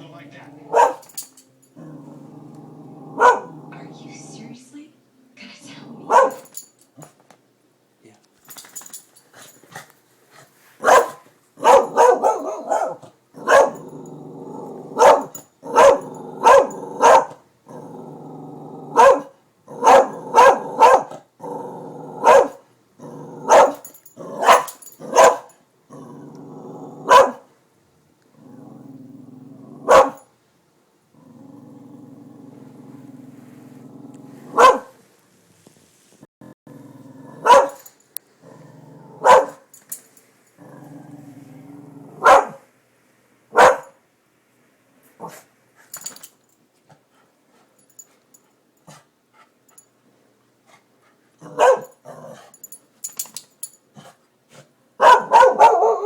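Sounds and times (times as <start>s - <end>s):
dog growling: 0.4s - 1.0s, 1.8s - 4.5s, 5.6s - 6.3s, 11.9s - 22.3s, 23.0s - 25.2s, 25.9s - 27.3s, 28.3s - 30.0s, 31.1s - 34.6s, 36.4s - 37.7s, 38.4s - 39.5s, 40.6s - 42.3s, 51.4s - 52.6s
dog barking: 0.7s - 1.1s, 3.2s - 3.5s, 6.0s - 6.6s, 10.8s - 13.8s, 15.0s - 17.4s, 18.9s - 21.2s, 22.2s - 22.6s, 23.5s - 23.8s, 24.4s - 25.6s, 27.0s - 27.5s, 29.8s - 30.2s, 34.5s - 35.0s, 37.4s - 37.9s, 39.2s - 39.6s, 42.2s - 42.7s, 43.5s - 44.0s, 51.5s - 52.0s, 55.0s - 56.0s.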